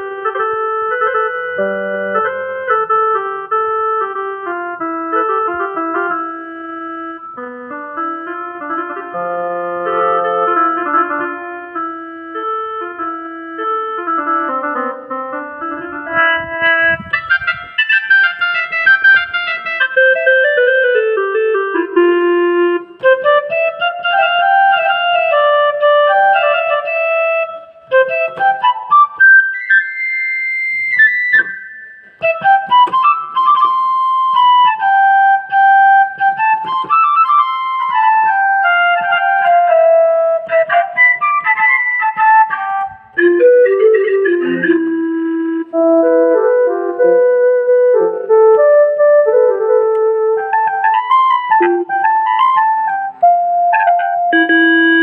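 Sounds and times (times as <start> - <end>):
electronic keyboard melody: 0.0 - 55.0.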